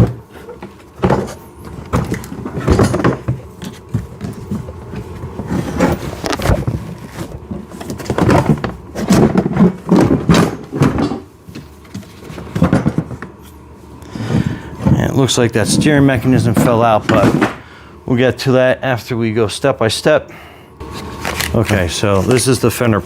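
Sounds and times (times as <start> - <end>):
hollow plastic parts clattering: 0.0 - 13.4.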